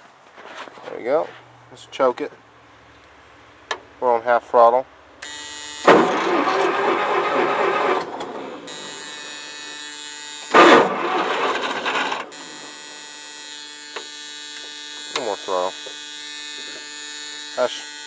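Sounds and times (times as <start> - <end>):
starter cranking engine: 5.8 - 9.3, 10.5 - 12.7
steady electrical hum: 7.0 - 17.9.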